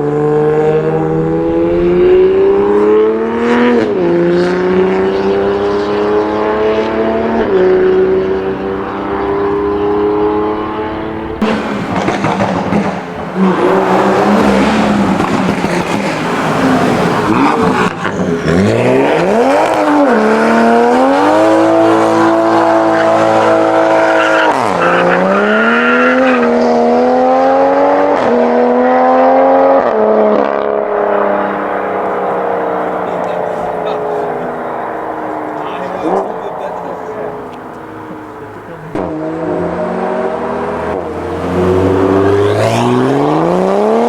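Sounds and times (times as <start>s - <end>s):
car engine revving: 0.0s - 44.0s
tyre noise: 30.8s - 39.3s.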